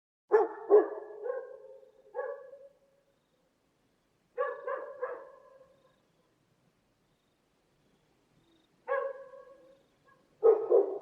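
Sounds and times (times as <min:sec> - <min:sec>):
dog barking: 0:00.3 - 0:02.9, 0:04.4 - 0:06.0, 0:08.8 - 0:11.0.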